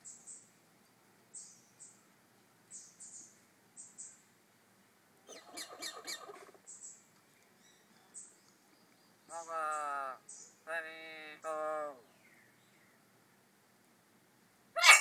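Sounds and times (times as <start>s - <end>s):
bird chirping: 1.3s - 2.0s, 2.7s - 4.3s, 5.3s - 10.8s
bird squawking: 5.3s - 6.6s, 14.8s - 15.0s.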